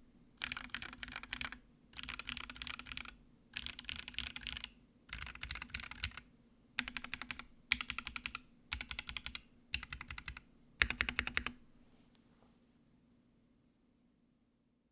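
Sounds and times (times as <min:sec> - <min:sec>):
typing on mechanical keyboard: 0:00.4 - 0:06.2, 0:06.8 - 0:11.6.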